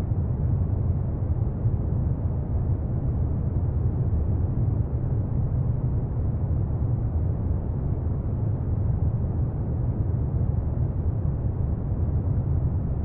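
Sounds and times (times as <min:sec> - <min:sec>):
low brown noise: 0:00.0 - 0:13.0.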